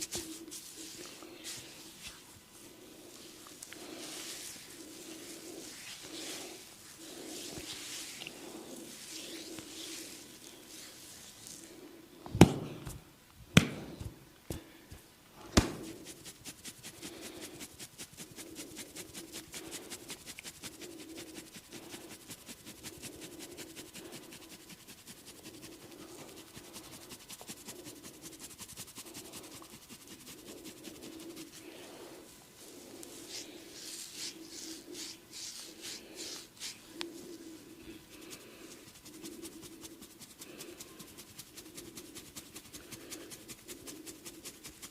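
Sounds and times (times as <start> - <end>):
hands slapping head: 12.4 - 13.0, 13.6 - 14.2, 15.5 - 15.9
fast tapping strokes: 38.2 - 44.9.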